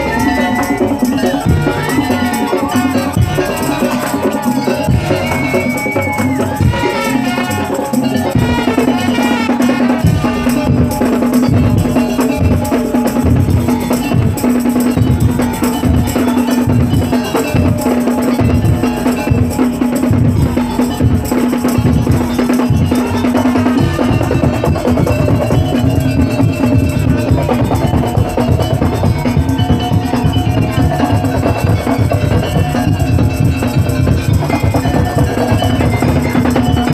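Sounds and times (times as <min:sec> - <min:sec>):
wood and rattle percussion: 0:00.0 - 0:36.9
bass drum beating: 0:08.4 - 0:36.9.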